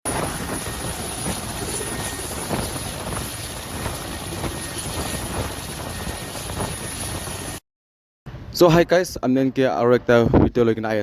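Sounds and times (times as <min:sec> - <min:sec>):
helicopter rotor and engine: 0:00.0 - 0:07.6.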